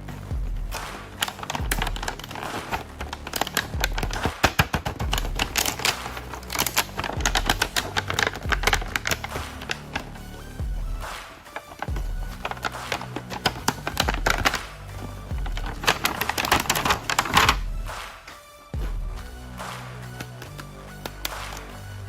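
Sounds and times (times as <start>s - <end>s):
background music with bass beat: 0.0s - 22.0s
plastic clicking and crinkling: 1.2s - 10.1s, 11.4s - 17.6s.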